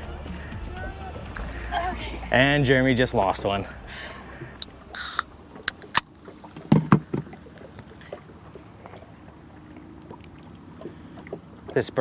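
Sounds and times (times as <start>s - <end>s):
short hiss: 5.0s - 5.3s
sharp clicks: 5.0s - 6.1s
low knocks: 6.6s - 7.4s.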